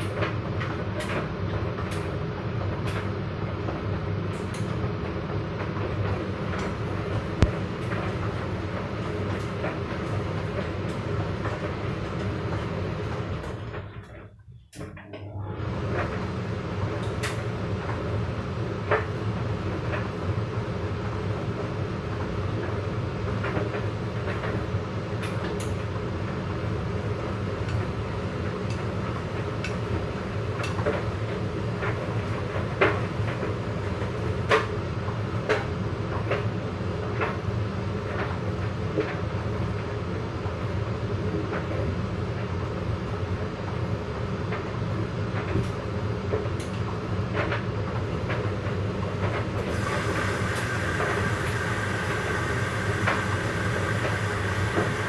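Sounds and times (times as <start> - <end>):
washer-dryer drum rumble: 0.0 - 55.0
high steady whine: 49.8 - 55.0.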